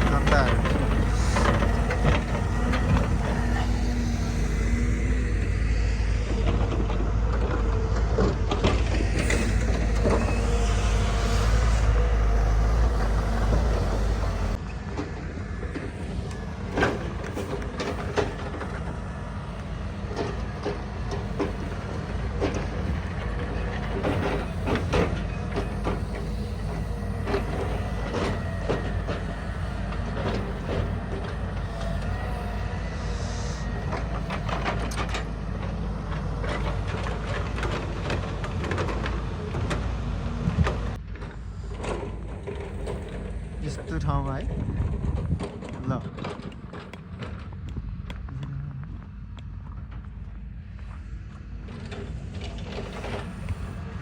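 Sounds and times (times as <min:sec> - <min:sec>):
machine engine running: 0:00.0 - 0:54.0.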